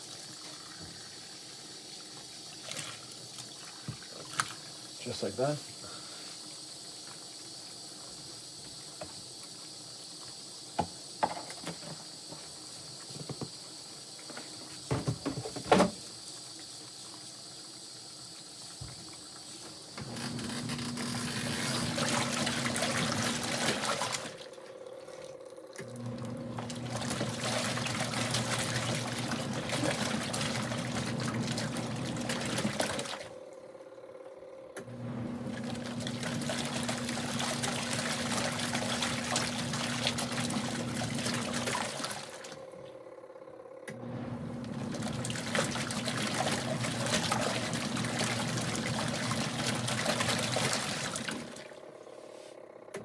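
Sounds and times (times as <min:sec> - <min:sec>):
washing machine churning water: 0:00.0 - 0:53.0.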